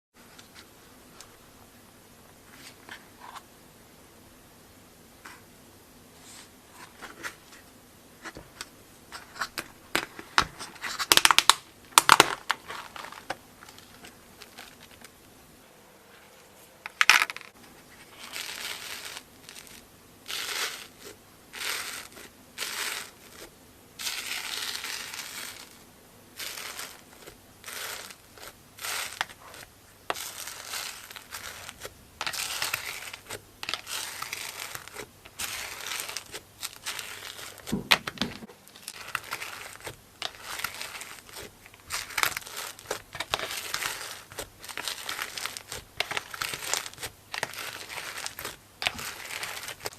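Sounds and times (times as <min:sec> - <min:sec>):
crunchy slime crackling: 0:10.9 - 0:15.1, 0:18.1 - 0:25.8, 0:26.4 - 0:49.9
slime crunching bursts: 0:26.4 - 0:37.8, 0:38.6 - 0:49.9.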